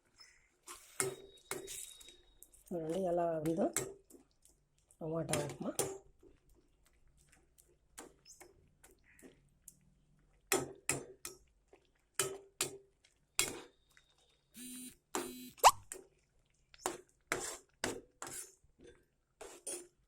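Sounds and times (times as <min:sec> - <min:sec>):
spoon scraping a pan: 0:00.6 - 0:03.9, 0:16.8 - 0:20.0.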